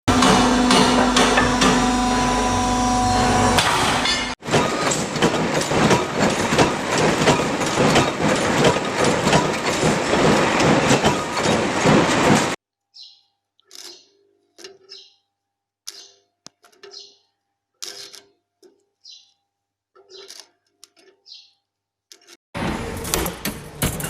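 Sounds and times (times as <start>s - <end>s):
industrial machinery clattering: 0.1s - 12.6s, 22.6s - 24.0s.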